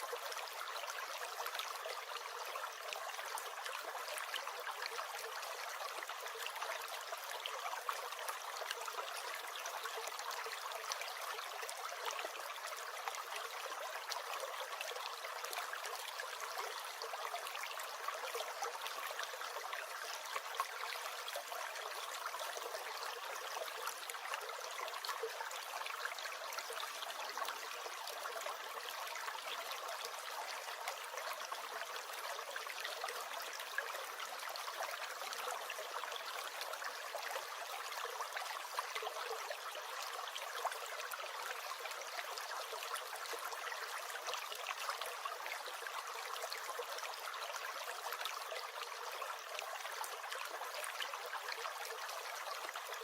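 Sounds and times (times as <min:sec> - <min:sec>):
stream gurgling and trickling: 0:00.0 - 0:53.0.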